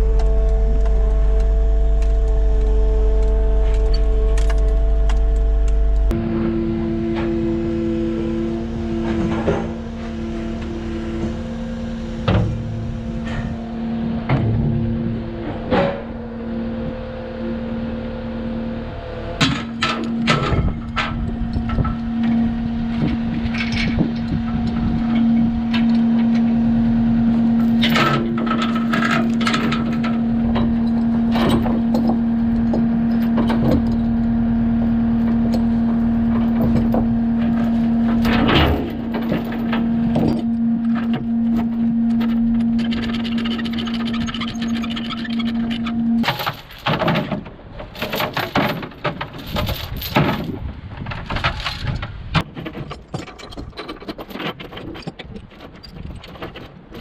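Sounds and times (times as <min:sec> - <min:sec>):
engine running: 0:00.0 - 0:52.5
knocks and clanks: 0:12.2 - 0:16.2, 0:19.4 - 0:26.6, 0:27.4 - 0:57.0.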